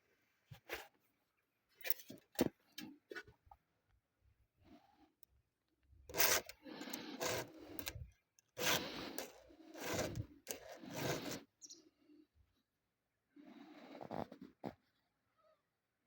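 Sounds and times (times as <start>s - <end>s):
rough scraping strokes: 6.1s - 8.0s, 8.6s - 11.5s.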